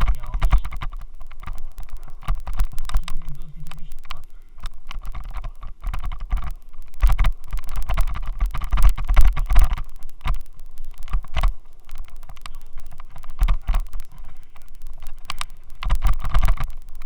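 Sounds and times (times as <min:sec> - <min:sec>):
low rumble: 0:00.0 - 0:17.0
camera rattling in mount: 0:04.7 - 0:10.4.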